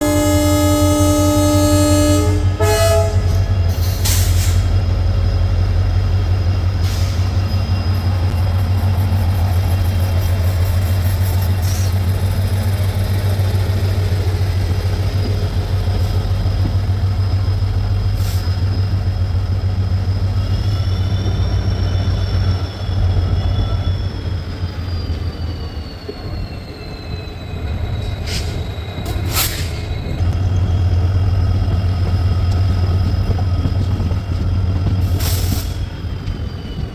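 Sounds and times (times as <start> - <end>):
locomotive horn: 0.0 - 4.1
train running: 0.0 - 36.9
wheel squeal: 3.2 - 36.9.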